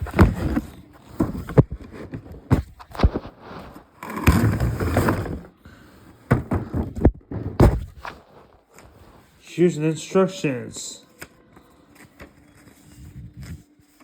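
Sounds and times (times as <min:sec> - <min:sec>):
cardboard box knocks and clicks: 0:00.0 - 0:03.4, 0:04.1 - 0:05.5, 0:06.3 - 0:08.2
packaging scraping and rustling: 0:00.0 - 0:05.6, 0:06.6 - 0:09.4, 0:11.6 - 0:14.0.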